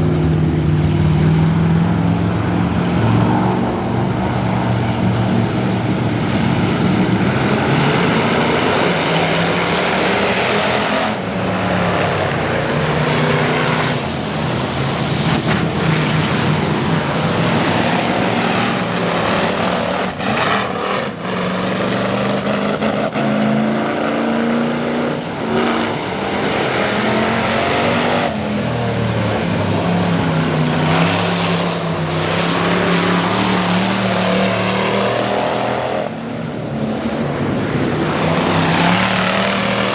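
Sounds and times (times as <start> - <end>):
race car engines running hard: 0.0 - 39.9.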